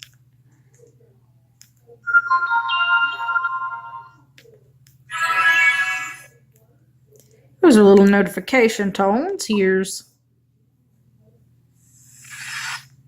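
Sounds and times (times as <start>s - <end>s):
bright phone tone: 2.1s - 4.2s, 5.1s - 6.2s
phone chiming tone: 2.1s - 4.2s.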